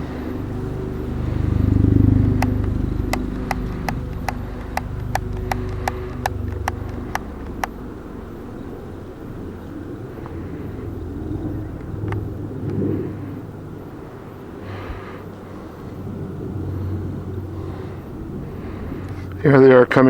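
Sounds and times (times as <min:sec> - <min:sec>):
helicopter rotor and engine drone: 0:00.0 - 0:20.0
sharp clicks: 0:02.3 - 0:07.8.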